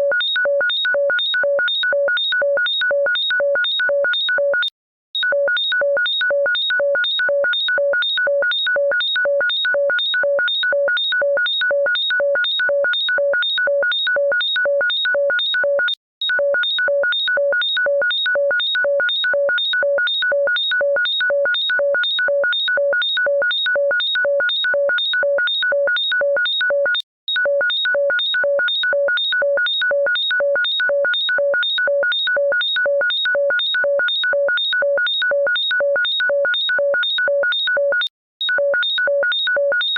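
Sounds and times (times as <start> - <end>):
shrill electronic ringtone beeps: 35.0 - 39.9.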